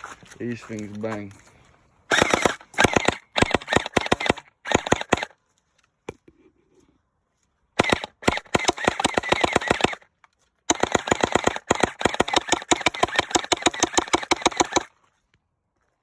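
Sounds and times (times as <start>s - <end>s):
gel blaster firing bursts: 2.1s - 5.3s, 7.8s - 10.1s, 10.7s - 14.9s.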